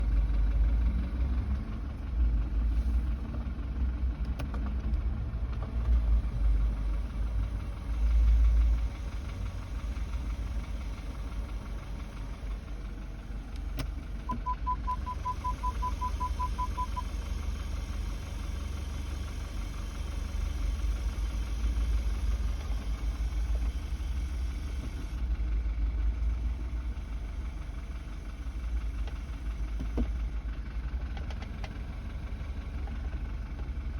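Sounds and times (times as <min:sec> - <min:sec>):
car engine rumbling: 0:00.0 - 0:33.9
short high beeps: 0:14.3 - 0:17.0.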